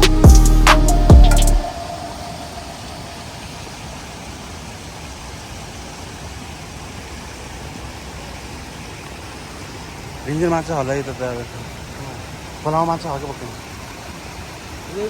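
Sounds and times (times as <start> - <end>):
background music: 0.0 - 3.0
stream flowing: 0.8 - 15.0.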